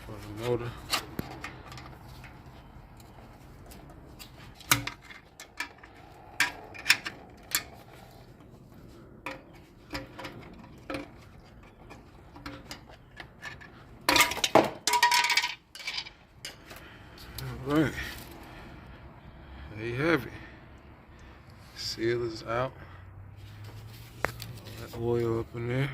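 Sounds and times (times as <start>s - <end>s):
metal tool clinking and scraping: 0.0s - 16.8s.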